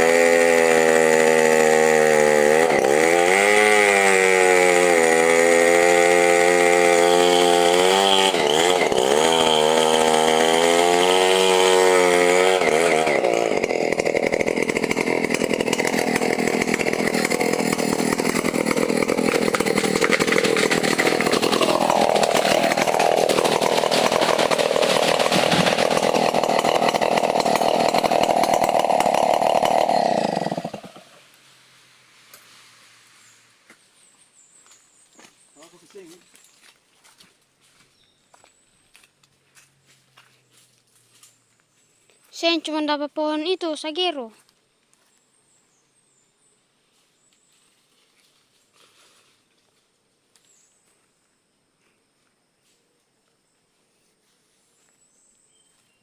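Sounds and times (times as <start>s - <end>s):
chainsaw cutting wood: 0.0s - 31.6s.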